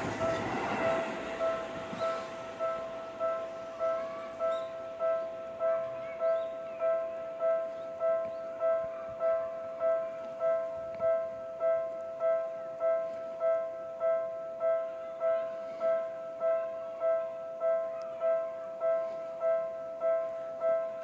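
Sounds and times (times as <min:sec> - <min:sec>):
level crossing bell ringing: 0:00.0 - 0:15.5.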